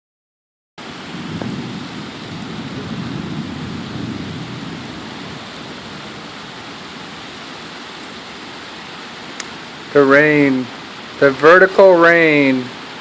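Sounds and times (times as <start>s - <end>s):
thunder rumbling: 0.8s - 8.1s
heavy rain pouring: 0.8s - 13.0s.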